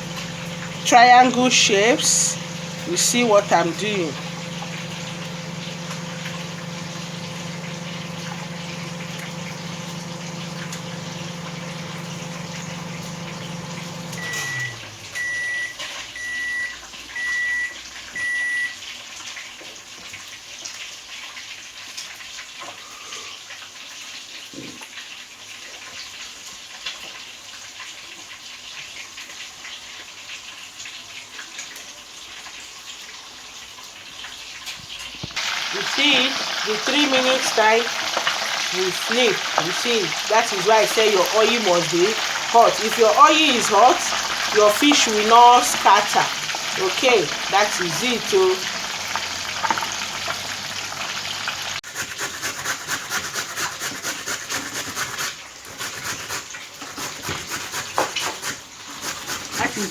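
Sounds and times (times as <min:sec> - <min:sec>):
appliance beeps: 0:00.0 - 0:18.8, 0:35.4 - 0:51.4
kitchen appliance humming: 0:00.0 - 0:18.8, 0:35.0 - 0:59.9
fish frying in hot oil: 0:00.0 - 0:59.9.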